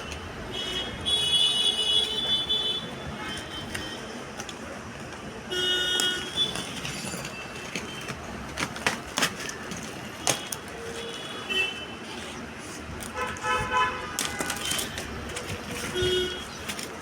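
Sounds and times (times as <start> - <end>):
handling knocks and taps: 14.2 - 17.0.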